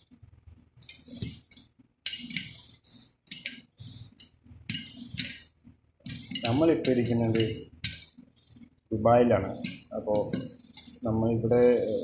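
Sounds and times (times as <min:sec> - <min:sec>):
popcorn popping in a pot: 0:00.8 - 0:08.2, 0:09.4 - 0:11.1.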